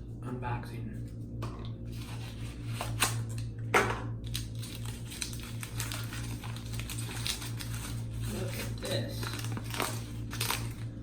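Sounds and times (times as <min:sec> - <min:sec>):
paper rustling: 0:04.3 - 0:10.9.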